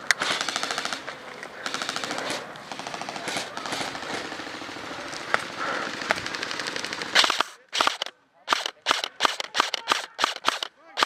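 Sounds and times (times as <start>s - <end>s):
airsoft guns firing full-auto bursts: 0.2s - 11.0s
sharp single gun cracks: 7.2s - 10.7s.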